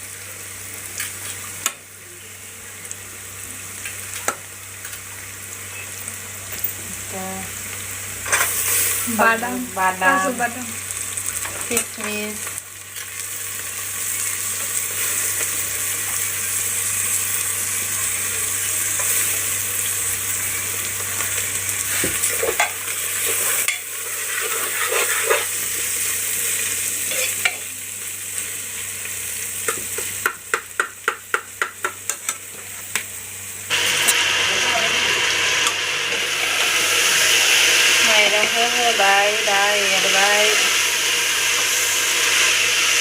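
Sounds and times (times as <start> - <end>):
nuts sizzling in a pan: 0.0 - 43.0
spoon scraping a pan: 21.9 - 25.5.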